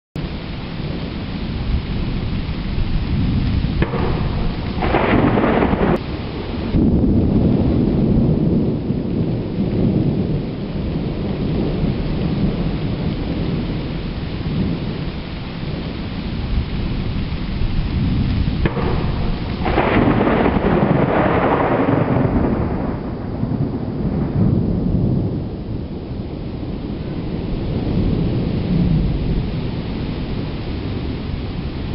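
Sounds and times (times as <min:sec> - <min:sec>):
rolling thunder rumble: 0:00.2 - 0:31.9
steady rain: 0:00.2 - 0:31.9
sharp thunderclap: 0:03.0 - 0:15.8, 0:16.4 - 0:26.1.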